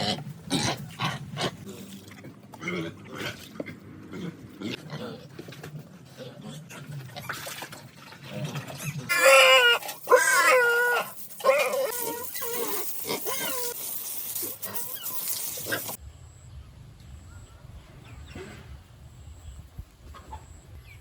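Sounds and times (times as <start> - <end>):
pigs grunting: 0.0 - 13.8
pigs squealing: 8.5 - 13.8.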